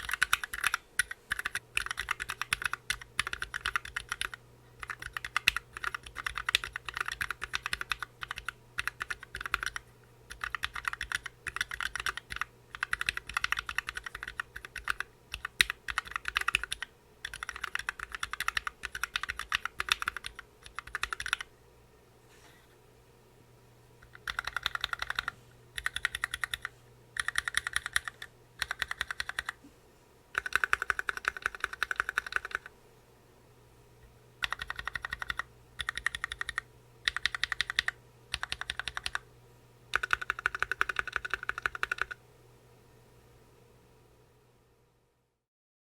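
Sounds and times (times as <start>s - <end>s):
rapid keyboard typing: 0.0s - 21.5s, 24.0s - 29.6s, 30.3s - 32.7s, 34.4s - 39.3s, 39.9s - 42.2s.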